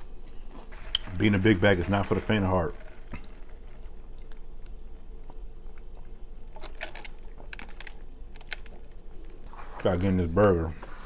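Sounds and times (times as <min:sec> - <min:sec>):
chewing food: 0:00.0 - 0:10.1
crisp crunching clicks: 0:06.6 - 0:09.4.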